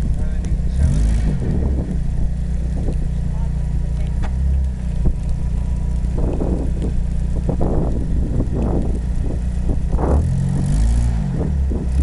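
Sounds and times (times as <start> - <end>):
car engine low rumble: 0.0 - 12.0.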